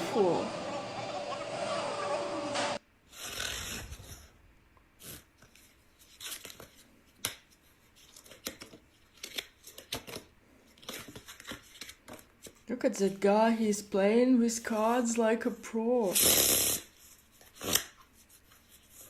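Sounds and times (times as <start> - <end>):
loud noisy sound: 0.0 - 2.8
playing cards snapping: 6.2 - 7.5, 8.1 - 12.6.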